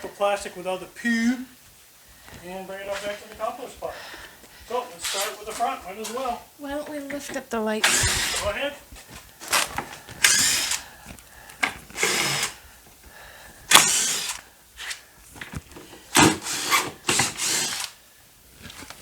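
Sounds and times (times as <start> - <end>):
power drill bursts: 4.7 - 5.7, 7.8 - 8.8, 9.4 - 11.0, 11.6 - 12.6, 13.7 - 15.0, 15.8 - 18.0.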